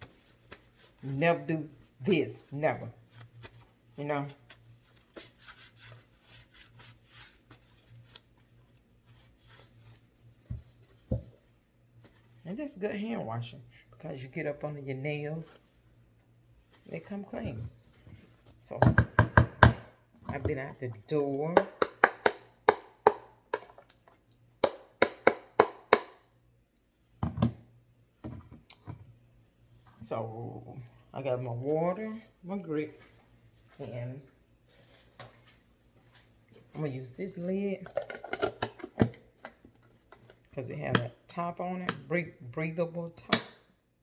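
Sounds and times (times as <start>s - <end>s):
low steady hum: 0.0s - 44.0s
kitchen items knocking and clicking: 18.7s - 20.7s, 21.5s - 24.0s, 24.6s - 26.2s, 37.8s - 41.2s.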